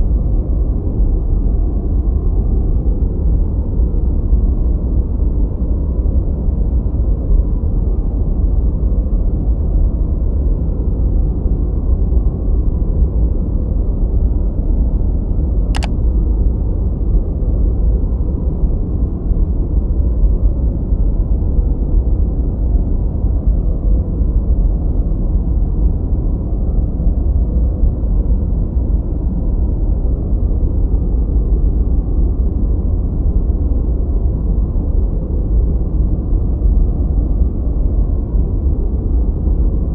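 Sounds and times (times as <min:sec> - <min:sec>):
tiny click: 0:15.8 - 0:16.0.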